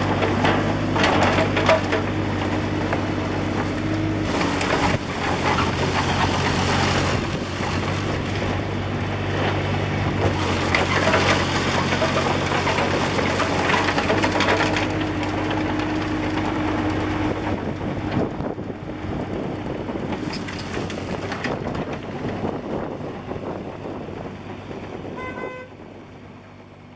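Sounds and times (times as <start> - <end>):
machine knocking and scraping: 0.0 - 18.6, 19.9 - 22.6
excavator diesel engine running: 0.0 - 26.9.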